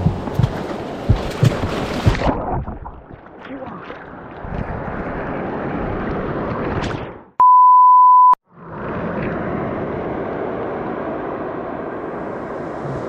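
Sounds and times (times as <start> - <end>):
bleep tone: 7.4 - 8.4.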